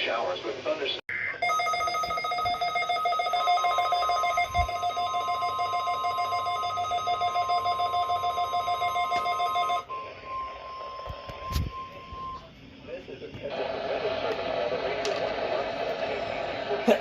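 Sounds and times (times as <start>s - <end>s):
pulsing electronic alarm: 1.4s - 12.7s
steady single-pitch alarm tone: 1.4s - 12.7s.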